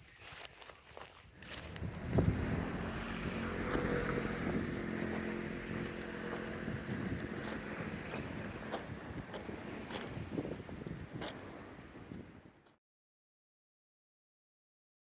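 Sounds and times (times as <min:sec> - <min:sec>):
footsteps: 0:00.0 - 0:11.5
vehicle engine humming: 0:01.4 - 0:12.1.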